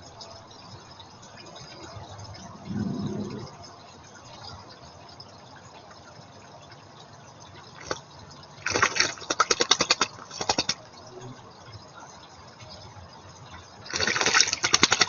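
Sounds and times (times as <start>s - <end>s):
bird splashing in water: 7.8s - 8.0s, 8.6s - 10.8s, 13.9s - 15.0s.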